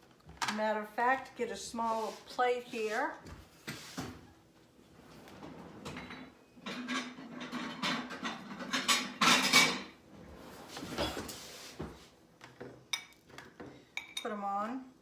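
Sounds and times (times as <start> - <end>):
dishes clinking and knocking: 5.8 - 10.0, 10.9 - 11.4.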